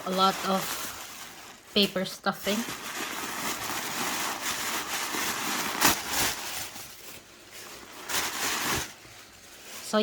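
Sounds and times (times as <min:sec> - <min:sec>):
paper crinkling and rustling: 0:00.0 - 0:10.0.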